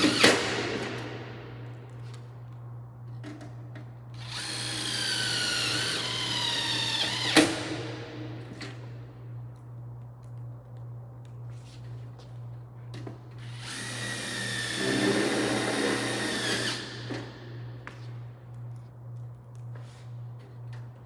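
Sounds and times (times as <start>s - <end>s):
low steady hum: 0.0s - 4.4s, 5.9s - 13.5s
cordless drill whine: 4.2s - 7.7s, 13.5s - 17.3s.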